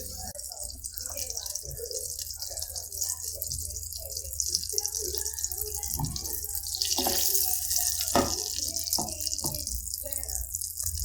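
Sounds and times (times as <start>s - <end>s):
tap running into a sink: 8.1s - 9.7s.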